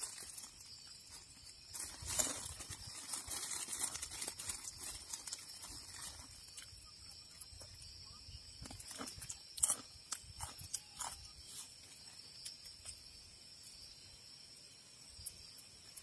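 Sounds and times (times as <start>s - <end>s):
insects buzzing: 0.0s - 16.0s.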